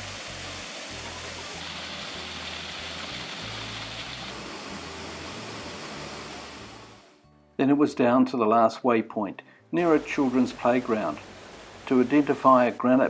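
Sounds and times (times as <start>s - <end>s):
waterfall rushing roar: 0.0s - 7.0s
background music: 0.0s - 13.0s.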